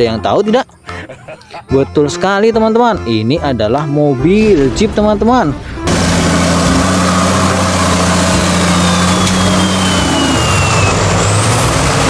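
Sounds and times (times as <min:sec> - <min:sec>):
car engine running: 0:04.3 - 0:12.0.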